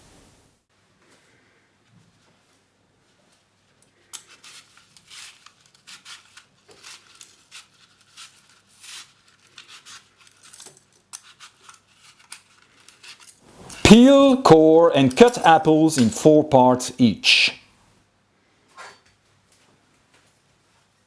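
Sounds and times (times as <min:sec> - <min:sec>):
kitchen utensil scrapes and clicks: 0:04.2 - 0:13.9.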